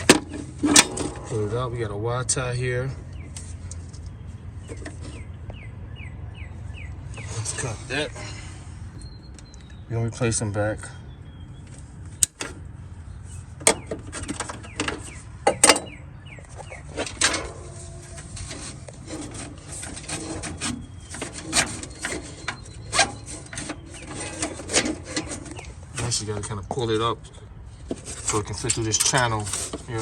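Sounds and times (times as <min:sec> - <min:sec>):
cable clicks and rubbing: 0:13.7 - 0:26.5.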